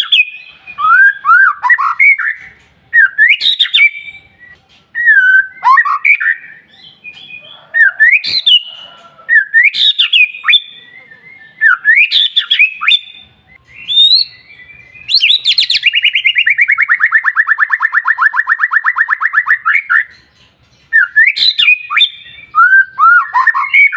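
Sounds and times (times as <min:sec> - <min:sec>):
bird singing whistled phrases: 0:00.0 - 0:20.3, 0:20.9 - 0:23.9
bird fast trill: 0:11.7 - 0:23.9.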